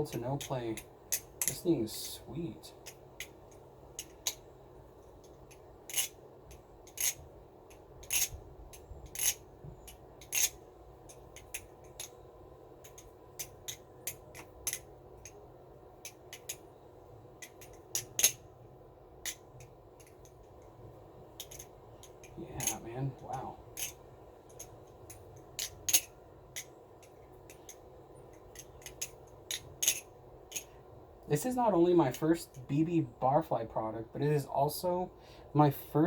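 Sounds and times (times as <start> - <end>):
butterfly knife handles clacking: 0.0 - 12.2, 12.8 - 15.4, 16.0 - 16.7, 17.4 - 18.5, 19.2 - 20.8, 21.4 - 30.8.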